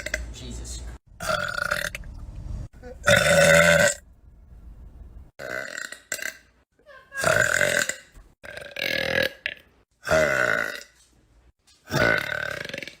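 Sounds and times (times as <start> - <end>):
woman belching loudly: 3.0 - 4.0, 7.0 - 10.9, 11.9 - 13.0.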